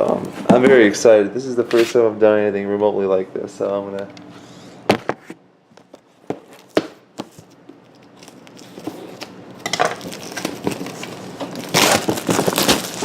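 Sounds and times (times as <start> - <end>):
packaging rustling and crinkling: 5.8 - 13.0.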